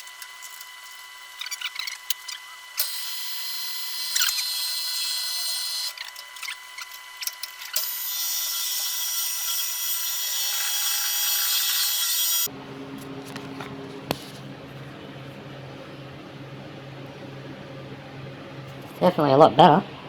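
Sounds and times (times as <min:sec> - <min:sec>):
power tool whine and grind: 0:00.0 - 0:12.5.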